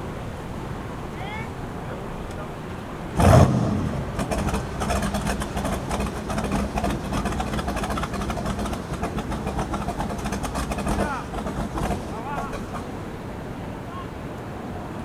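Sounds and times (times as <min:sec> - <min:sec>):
engine idling with ticking: 0:03.0 - 0:13.5.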